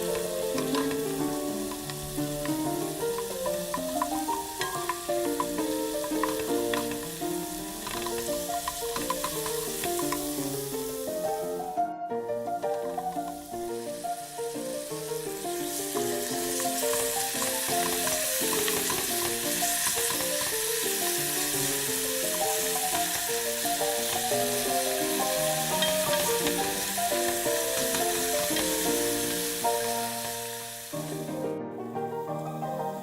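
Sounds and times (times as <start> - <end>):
food sizzling in a pan: 0.0 - 11.8, 12.4 - 31.4
light melodic background music: 0.0 - 33.0.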